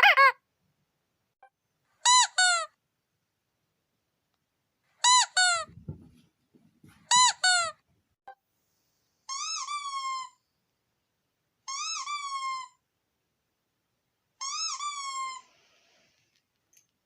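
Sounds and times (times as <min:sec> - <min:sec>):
squeaky dog toy squeaking: 0:00.0 - 0:00.4, 0:02.0 - 0:02.8, 0:05.0 - 0:05.8, 0:07.0 - 0:07.8, 0:09.3 - 0:10.5, 0:11.6 - 0:12.8, 0:14.4 - 0:15.5.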